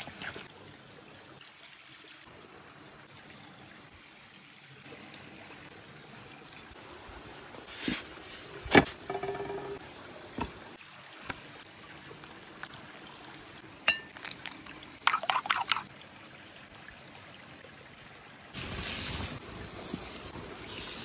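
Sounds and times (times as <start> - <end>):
utensils and dishes clinking: 9.0 - 9.8.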